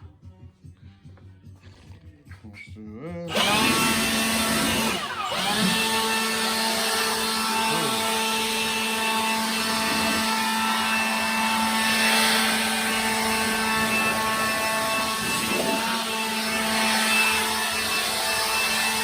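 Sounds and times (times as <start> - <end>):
motor hum: 3.3 - 19.0.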